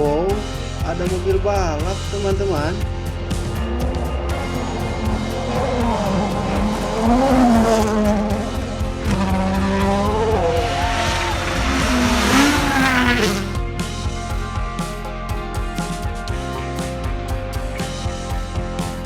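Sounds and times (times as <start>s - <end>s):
background music with steady beat: 0.0s - 19.0s
race car engine revving: 2.9s - 14.1s.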